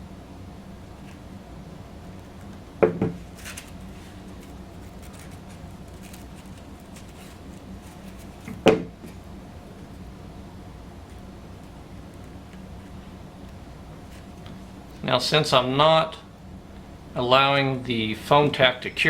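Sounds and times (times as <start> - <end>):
steady low hum: 0.0 - 19.0
handling ticks and rustles: 0.8 - 1.4, 2.0 - 10.1, 11.0 - 15.1
sharp knocks on workbench: 2.8 - 3.2, 8.6 - 9.0.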